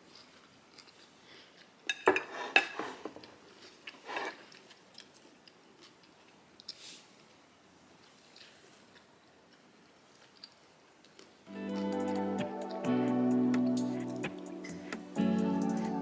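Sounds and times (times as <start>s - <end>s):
cutlery clinking against bowl: 1.9s - 3.3s.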